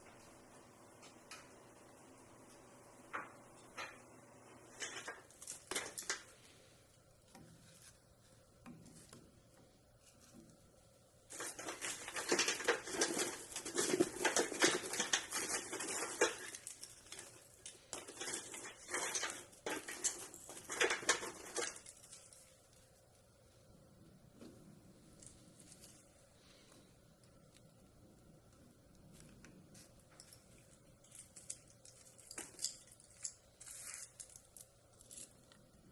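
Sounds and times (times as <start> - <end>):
kindling sticks knocking and clattering: 11.3 - 22.4.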